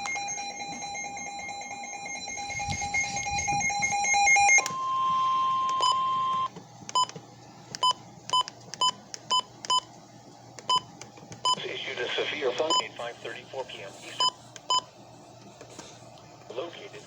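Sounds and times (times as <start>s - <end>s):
electronic alarm tone: 0.0s - 6.5s.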